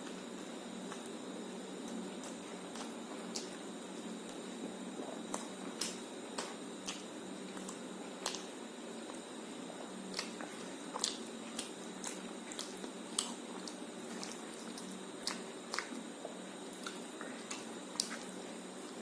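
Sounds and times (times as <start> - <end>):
wet squishy chewing: 1.8 - 19.0
mouth clicks and smacks: 10.1 - 16.1.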